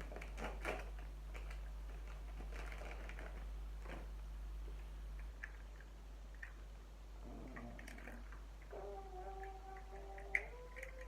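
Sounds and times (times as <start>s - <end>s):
packaging rustling: 0.0s - 4.1s
steady low hum: 0.0s - 11.0s
plastic toy figures clicking: 9.3s - 11.0s.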